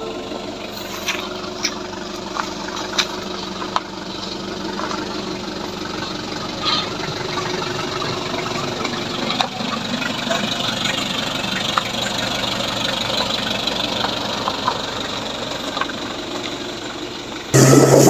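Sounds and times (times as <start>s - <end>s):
pickup engine running: 0.0s - 18.0s.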